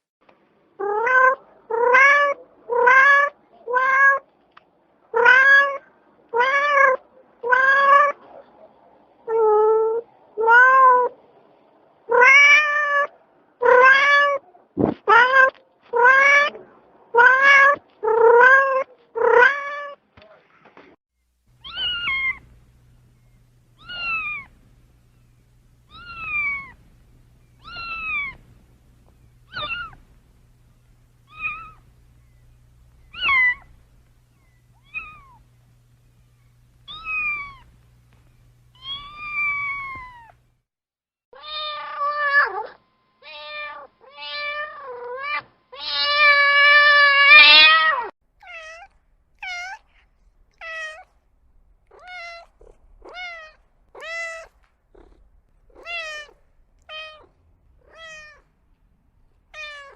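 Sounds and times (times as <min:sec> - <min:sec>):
kitten meowing: 0:21.6 - 0:22.5, 0:23.8 - 0:24.6, 0:25.9 - 0:26.8, 0:27.6 - 0:28.5, 0:29.4 - 0:30.1, 0:31.2 - 0:31.9, 0:33.0 - 0:33.8, 0:34.4 - 0:35.4, 0:36.8 - 0:37.7, 0:38.8 - 0:40.4, 0:41.4 - 0:49.8, 0:51.9 - 0:58.5, 0:59.5 - 0:59.9.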